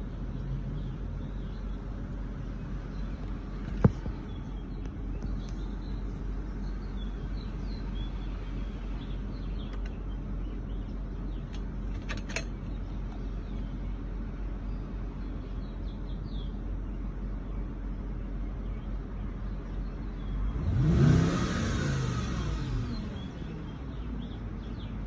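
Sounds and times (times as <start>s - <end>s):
car engine idling: 0.0s - 25.0s
sharp clicks: 9.6s - 10.0s.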